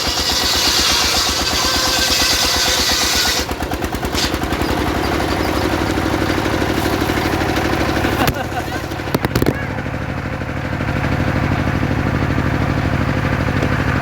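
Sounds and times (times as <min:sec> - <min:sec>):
saw blade cutting wood hiss: 0:00.0 - 0:05.2
saw engine running: 0:00.0 - 0:14.0.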